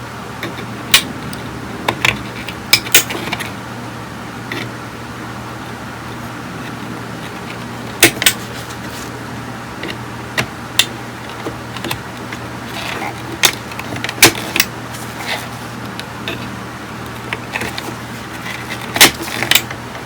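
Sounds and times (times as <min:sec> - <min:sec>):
tools clicking on a workbench: 0:12.8 - 0:14.7, 0:17.3 - 0:19.8.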